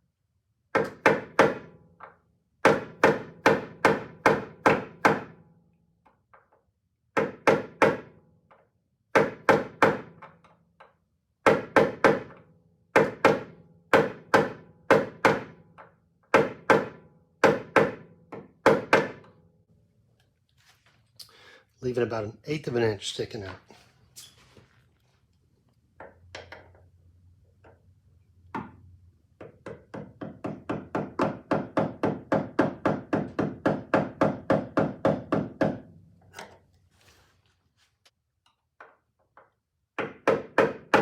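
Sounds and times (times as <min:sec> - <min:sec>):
hammer striking hinge pin: 0:00.7 - 0:05.4, 0:07.2 - 0:19.4, 0:29.4 - 0:36.6.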